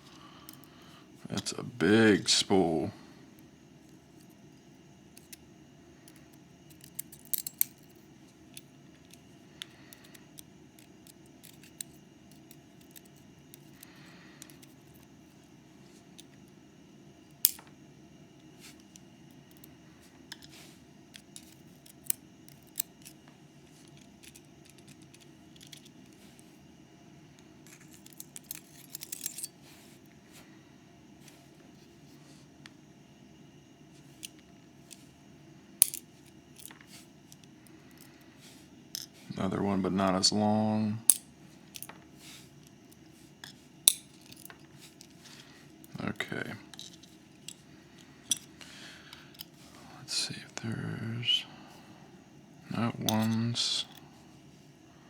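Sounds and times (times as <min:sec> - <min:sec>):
metallic clicks of lock parts: 0:06.1 - 0:07.9, 0:27.7 - 0:29.5, 0:35.8 - 0:36.0, 0:41.1 - 0:42.0, 0:43.9 - 0:45.1.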